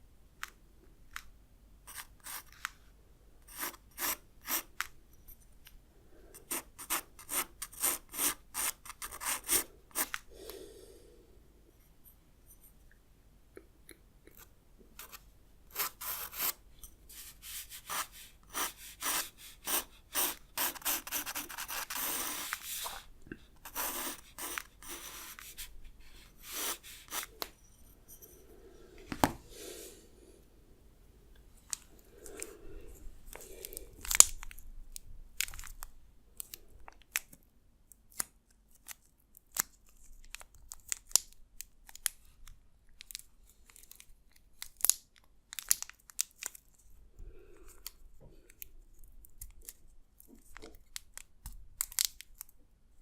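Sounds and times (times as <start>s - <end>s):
pencil scratching on paper: 1.9s - 2.6s, 3.4s - 4.8s, 6.4s - 10.2s, 14.4s - 27.4s.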